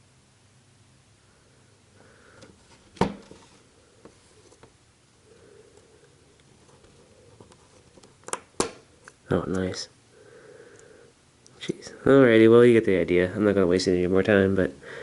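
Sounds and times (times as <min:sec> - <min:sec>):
soft handling noise: 0:02.3 - 0:04.8, 0:05.7 - 0:09.8.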